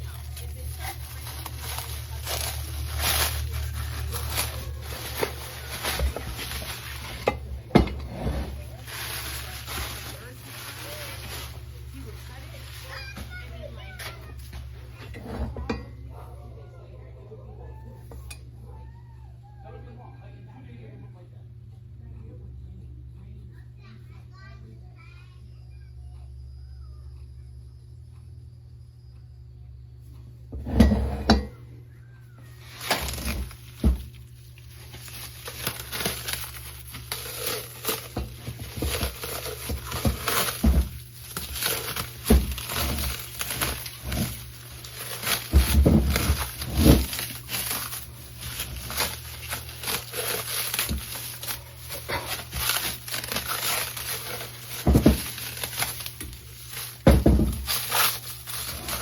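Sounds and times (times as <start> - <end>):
metal parts clinking and knocking: 0.0 - 12.8, 32.7 - 59.0
wrapping crinkling and tearing: 0.0 - 15.0, 32.5 - 59.0.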